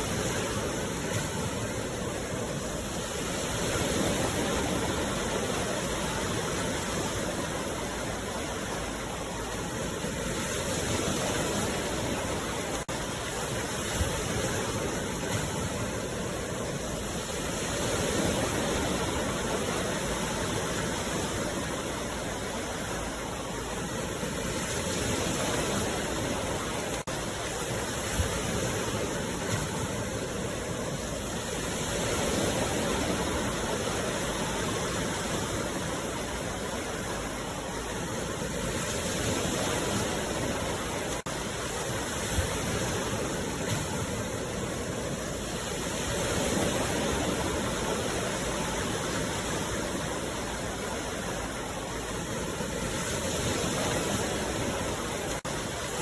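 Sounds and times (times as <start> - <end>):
sea waves breaking: 0.0 - 56.0.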